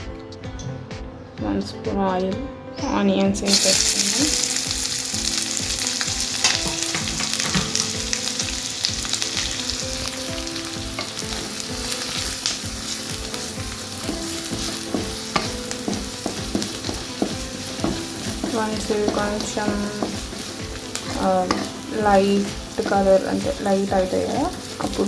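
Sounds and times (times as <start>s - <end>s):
onion sizzling in oil: 3.5s - 25.0s
utensil tapping and scraping pan: 6.4s - 8.0s, 14.0s - 23.1s.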